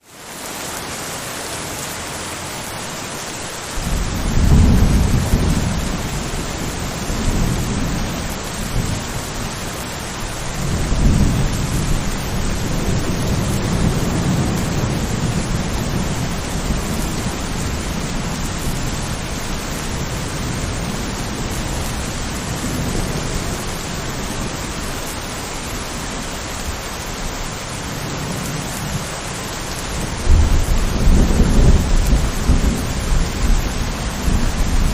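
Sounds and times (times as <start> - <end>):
rain hissing: 0.0 - 34.9
rolling thunder: 3.8 - 25.0, 29.8 - 34.9.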